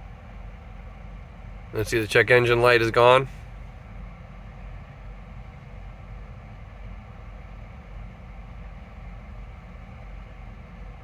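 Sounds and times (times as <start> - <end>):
diesel engine idling: 1.4 - 3.8.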